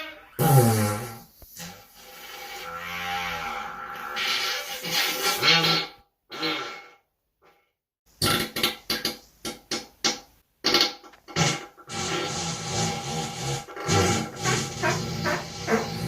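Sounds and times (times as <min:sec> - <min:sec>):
person farting: 0:00.2 - 0:02.7, 0:03.8 - 0:07.0, 0:08.2 - 0:09.9, 0:10.6 - 0:16.0.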